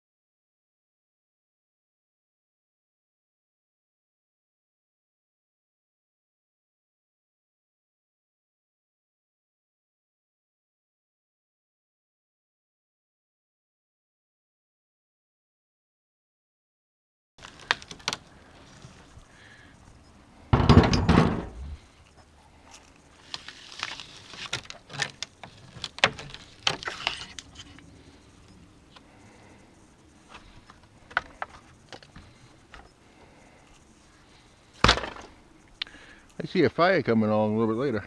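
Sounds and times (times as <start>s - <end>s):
door hardware and tools clattering: 20.5s - 21.8s, 24.5s - 27.8s
heavy thump: 20.5s - 21.8s.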